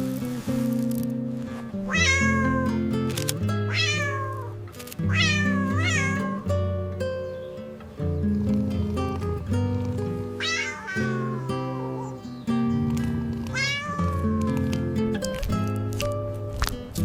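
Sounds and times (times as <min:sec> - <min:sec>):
cat meowing: 0:01.9 - 0:02.9, 0:03.7 - 0:06.5, 0:10.4 - 0:12.4, 0:13.5 - 0:14.7.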